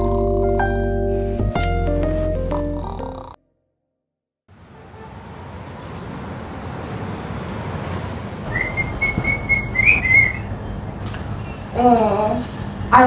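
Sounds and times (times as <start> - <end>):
traffic rumble: 4.5 - 13.0
high whistling tone: 8.5 - 10.8.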